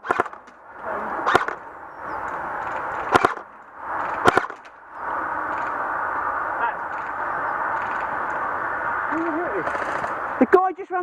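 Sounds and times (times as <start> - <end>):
airsoft gun shots: 0.0 - 0.5, 1.2 - 1.6, 3.1 - 3.5, 4.2 - 4.6
rattling airsoft fire: 0.0 - 0.6, 1.2 - 1.7, 2.6 - 4.7.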